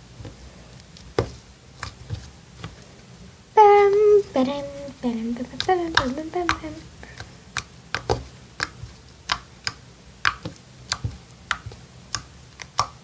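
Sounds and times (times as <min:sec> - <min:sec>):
slime clicking and popping: 0:07.5 - 0:13.0.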